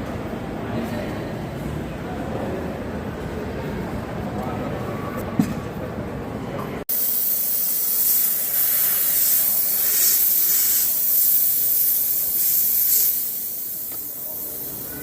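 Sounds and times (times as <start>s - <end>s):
steam jet hissing: 6.9s - 15.0s.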